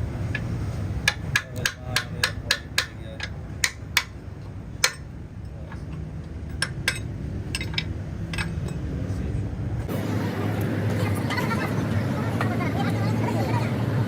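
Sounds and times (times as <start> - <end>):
hammer striking metal: 0.4 - 4.2, 4.8 - 5.1, 6.5 - 8.8.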